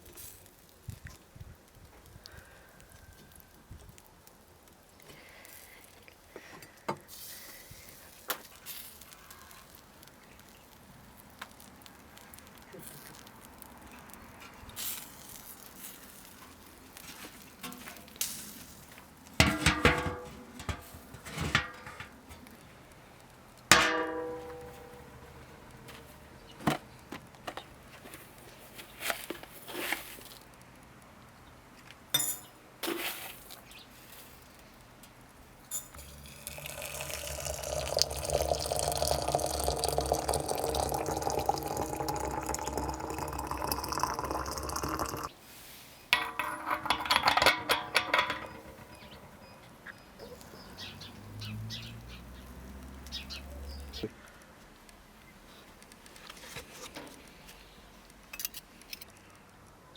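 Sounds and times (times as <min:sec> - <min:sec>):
liquid poured into container: 0:36.0 - 0:45.3
utensils knocking and clinking: 0:46.2 - 0:49.4.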